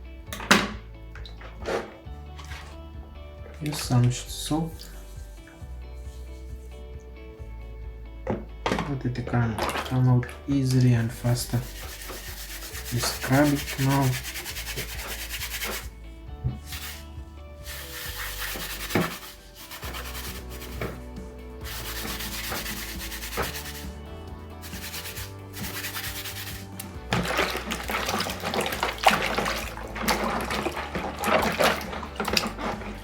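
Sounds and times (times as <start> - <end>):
steel wool scrubbing metal: 10.6 - 16.0, 16.6 - 33.0.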